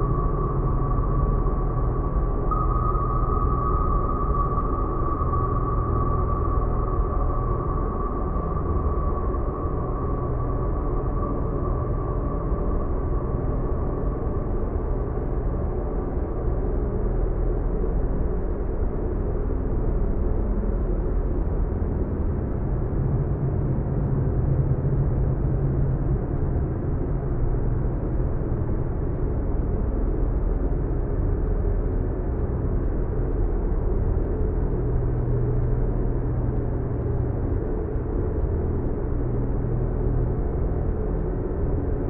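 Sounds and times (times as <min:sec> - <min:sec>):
faint held tones: 0:00.0 - 0:11.4
low rumbling drone: 0:00.0 - 0:42.0.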